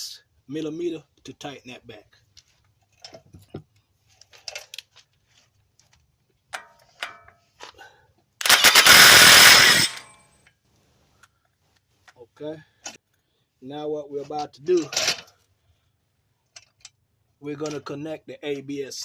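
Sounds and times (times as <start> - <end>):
impact wrench rattling: 8.4 - 10.4.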